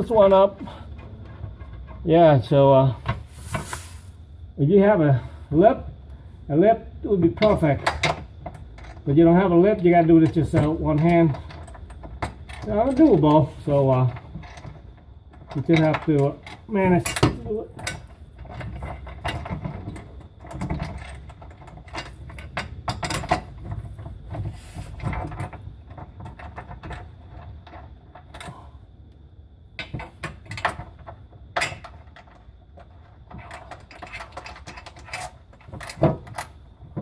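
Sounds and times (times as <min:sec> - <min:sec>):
metal clicks and knocks: 0:07.2 - 0:28.6, 0:29.8 - 0:37.0.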